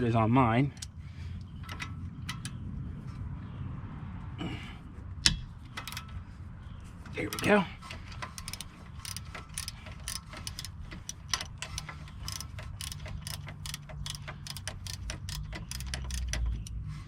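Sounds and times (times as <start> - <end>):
ratchet wrench clicking: 0.7 - 2.6, 5.2 - 6.2, 7.2 - 16.9
low rumble: 0.7 - 7.2.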